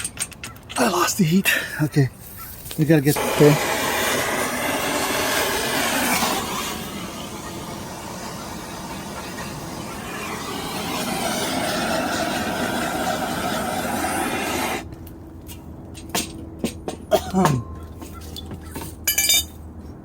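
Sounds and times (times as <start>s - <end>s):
heat gun hissing: 3.0s - 14.9s.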